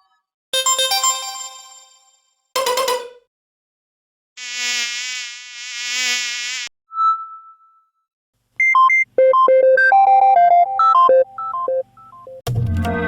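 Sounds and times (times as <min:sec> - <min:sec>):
electronic beeping melody: 0:00.0 - 0:02.0, 0:02.6 - 0:03.2.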